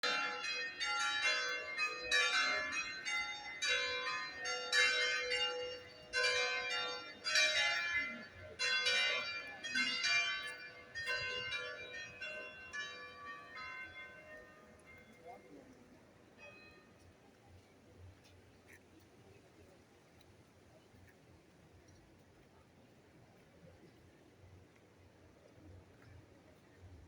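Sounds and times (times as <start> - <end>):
church bells pealing: 0.0 - 15.2.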